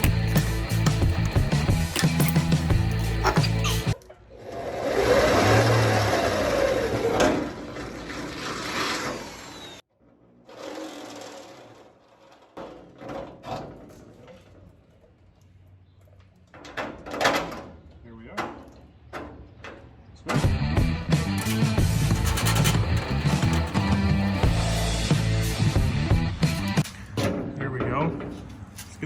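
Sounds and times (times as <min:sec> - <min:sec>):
tools and metal parts clattering: 0:00.0 - 0:04.0, 0:21.3 - 0:24.8.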